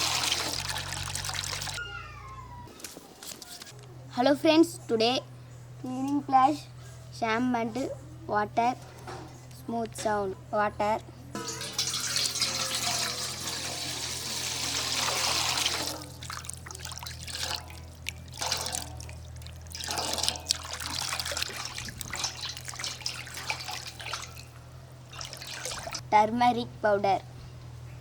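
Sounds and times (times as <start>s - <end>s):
water pouring: 0.0s - 1.8s, 11.4s - 26.0s
water splashing and trickling: 0.0s - 1.8s, 11.4s - 26.0s.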